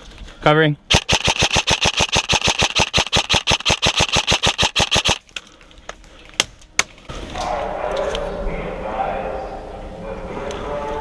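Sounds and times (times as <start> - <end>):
airsoft rifle full-auto burst: 0.9 - 5.2
single sharp shots: 0.9 - 5.2.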